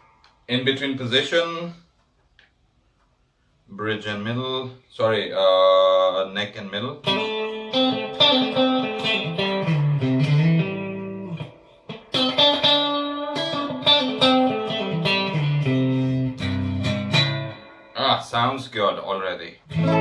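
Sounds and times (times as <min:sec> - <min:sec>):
clean electric guitar notes: 0:07.0 - 0:18.0, 0:19.7 - 0:20.0.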